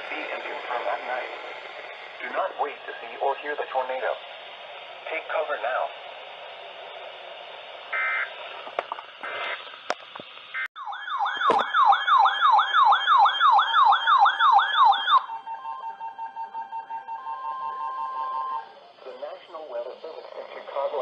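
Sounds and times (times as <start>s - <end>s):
radio static hiss: 0.0s - 10.6s, 18.9s - 21.0s
warbling electronic siren tone: 7.9s - 8.3s, 10.5s - 19.5s.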